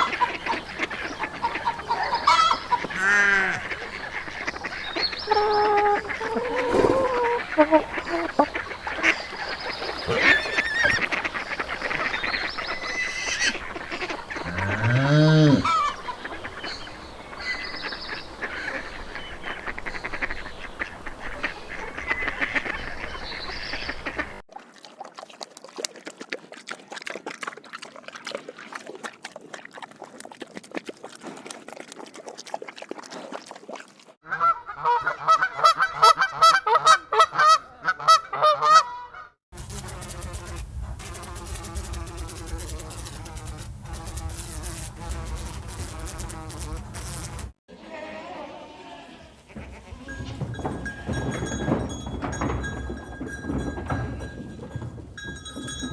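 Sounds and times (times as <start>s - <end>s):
flock of birds calling: 0.0s - 24.4s
bird call rising and falling: 3.9s - 11.0s.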